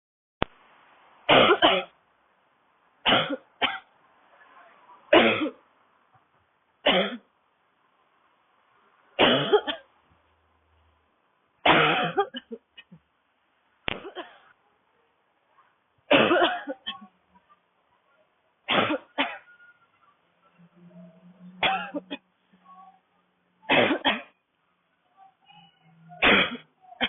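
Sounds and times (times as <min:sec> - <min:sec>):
woman coughing: 0:01.3 - 0:01.9, 0:05.2 - 0:05.6, 0:09.2 - 0:09.8, 0:11.7 - 0:12.6, 0:16.1 - 0:17.1, 0:18.7 - 0:19.6, 0:21.6 - 0:22.2, 0:23.7 - 0:24.4, 0:26.2 - 0:27.0.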